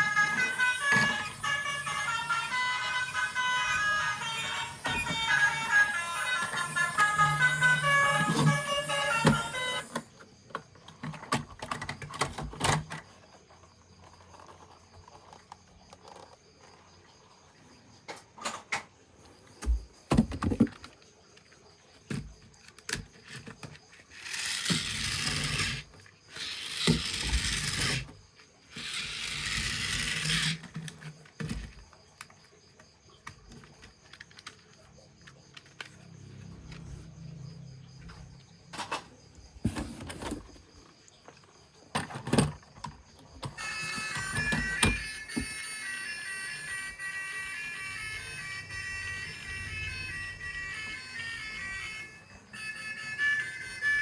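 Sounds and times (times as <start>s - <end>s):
clicks and knocks of toys: 8.0s - 13.1s, 33.2s - 36.1s.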